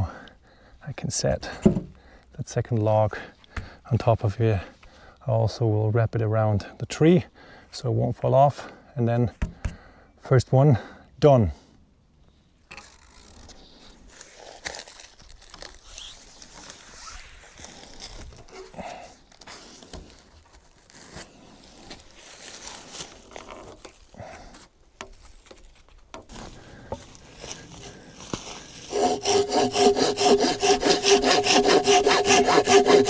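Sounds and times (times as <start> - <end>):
cord rustling and crinkling: 12.8 - 28.9
footsteps on forest litter: 26.3 - 29.0.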